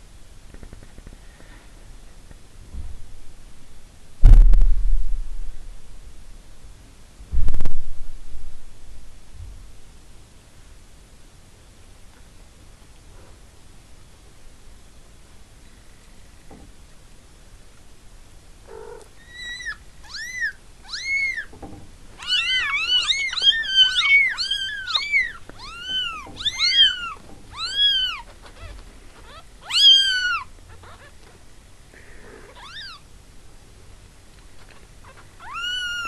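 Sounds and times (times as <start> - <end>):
kittens mewing: 18.7 - 21.5, 22.2 - 31.3, 32.0 - 33.0, 34.6 - 36.0.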